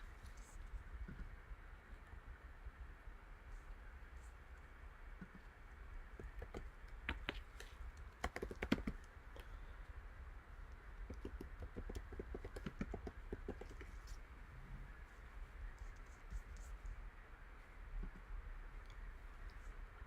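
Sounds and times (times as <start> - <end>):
typing on computer keyboard: 8.2 - 9.1, 11.1 - 13.9.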